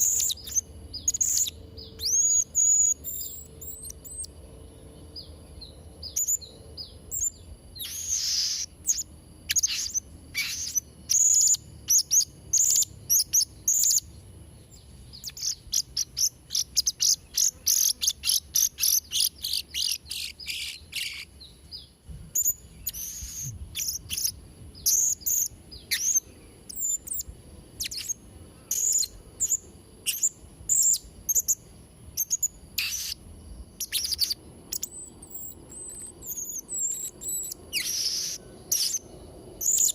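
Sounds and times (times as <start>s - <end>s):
parrot shrill chirps: 7.8s - 14.0s, 35.8s - 39.0s.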